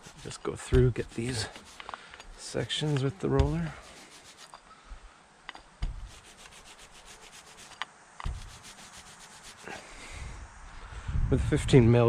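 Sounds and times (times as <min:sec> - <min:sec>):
paint roller rubbing: 0:00.0 - 0:04.6, 0:05.9 - 0:09.9.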